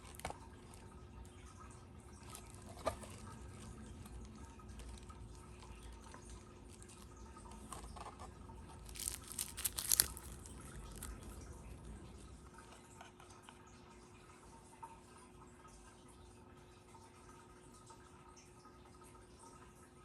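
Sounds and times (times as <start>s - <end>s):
crinkling: 0.0s - 12.0s.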